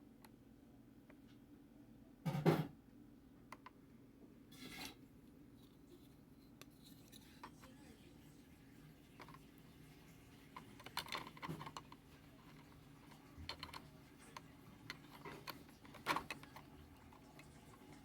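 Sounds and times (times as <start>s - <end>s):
small hard parts clicking: 10.6s - 18.0s.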